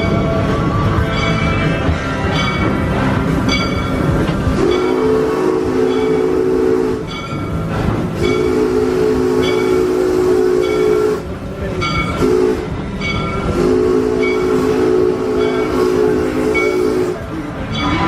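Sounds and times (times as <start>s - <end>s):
bell ringing: 0.0s - 0.4s, 1.1s - 5.1s, 5.9s - 6.4s, 7.1s - 7.6s, 9.4s - 9.9s, 11.8s - 12.2s, 13.0s - 13.5s, 14.2s - 14.7s, 15.4s - 15.8s, 16.6s - 16.9s, 17.7s - 18.0s
locomotive whistle blasts: 3.5s - 18.0s.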